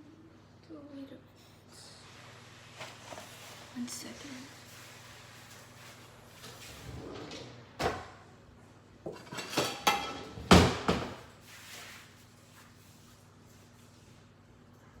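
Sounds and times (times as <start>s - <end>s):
kitchen items knocking and clattering: 7.0s - 8.2s, 9.0s - 11.3s.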